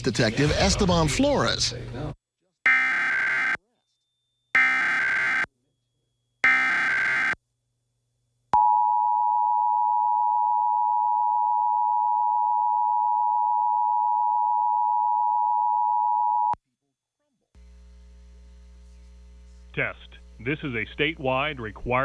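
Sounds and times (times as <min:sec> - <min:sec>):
digital data bursts: 0:02.7 - 0:03.6, 0:04.6 - 0:05.5, 0:06.4 - 0:07.4
two-tone attention signal: 0:02.7 - 0:03.6, 0:04.6 - 0:05.5, 0:06.4 - 0:07.4.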